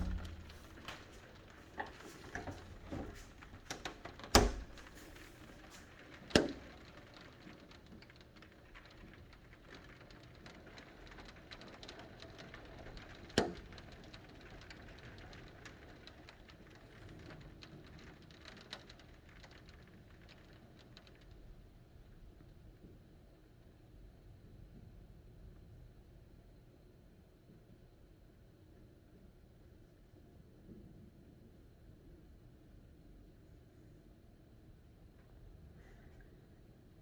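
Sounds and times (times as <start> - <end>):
faint rain patter: 0.0 - 26.4.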